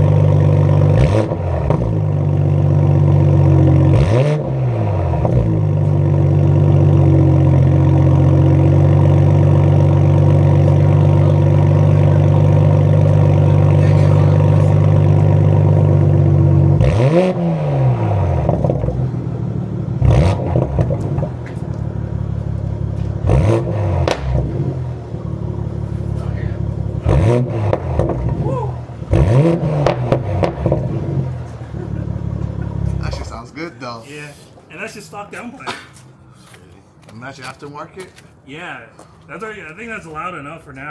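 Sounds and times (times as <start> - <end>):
car engine revving: 0.0 - 33.6.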